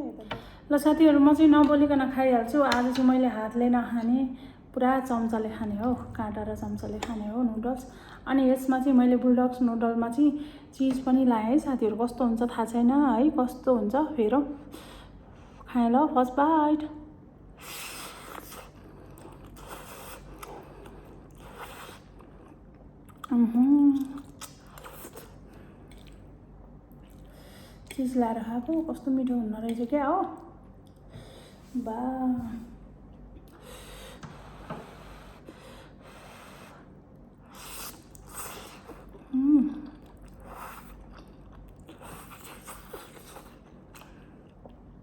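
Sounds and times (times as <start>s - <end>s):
chewing and mouth noises: 18.1s - 28.1s, 37.5s - 44.9s
noodles slurped and chewed: 40.0s - 44.5s.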